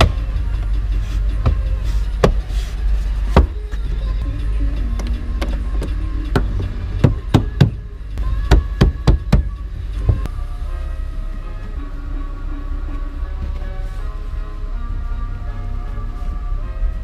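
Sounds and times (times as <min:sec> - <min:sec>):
car engine idling: 0:00.0 - 0:17.0
faint music from car stereo: 0:00.0 - 0:17.0.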